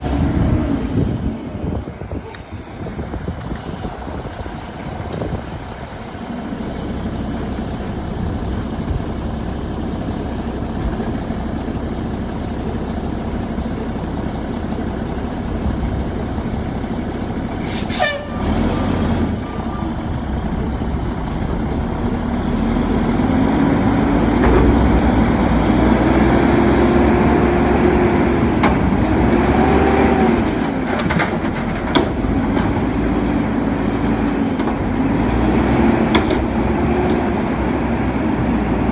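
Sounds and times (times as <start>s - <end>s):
garbage truck diesel engine revving: 5.7s - 38.9s.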